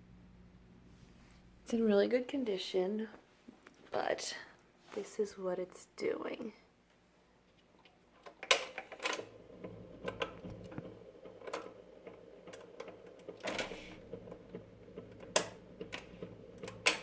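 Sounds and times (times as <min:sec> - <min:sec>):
record changer motor hum: 0:07.8 - 0:17.0
mechanical clatter: 0:08.2 - 0:17.0
mechanical clicks and knocks: 0:08.2 - 0:17.0.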